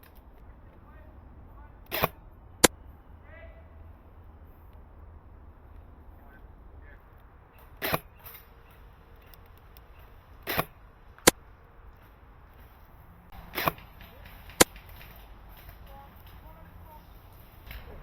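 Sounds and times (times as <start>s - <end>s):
airsoft gun shots: 1.9s - 2.8s, 7.6s - 8.4s, 10.4s - 11.4s, 13.4s - 14.8s.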